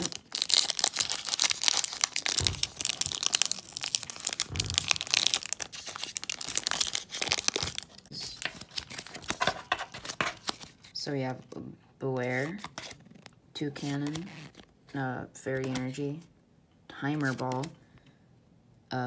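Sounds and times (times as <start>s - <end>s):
foil wrapper crinkling and tearing: 0.0s - 10.8s.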